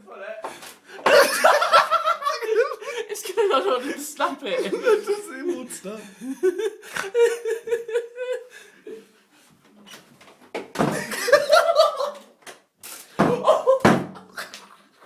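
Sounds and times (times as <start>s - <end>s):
laughter: 1.0s - 9.1s, 10.9s - 12.4s, 13.3s - 14.9s
door knocking and rattling: 10.5s - 11.1s.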